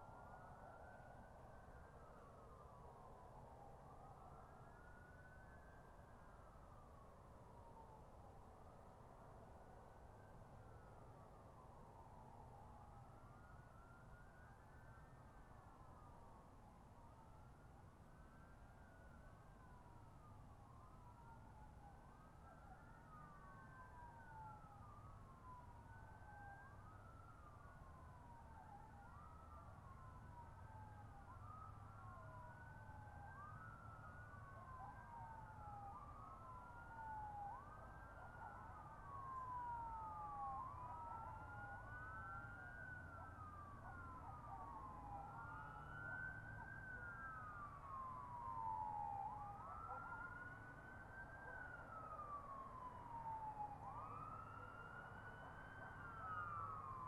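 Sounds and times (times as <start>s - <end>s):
police sirens wailing: 33.2s - 57.0s.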